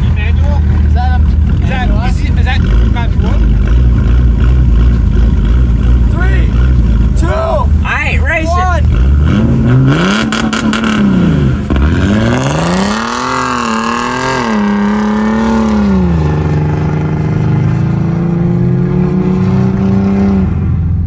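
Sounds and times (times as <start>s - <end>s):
car engine revving: 0.0s - 21.0s.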